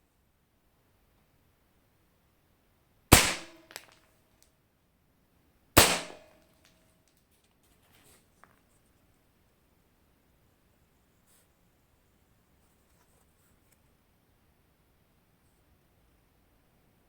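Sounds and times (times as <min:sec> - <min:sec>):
airsoft gun shots: 0:03.1 - 0:04.0, 0:05.8 - 0:06.4.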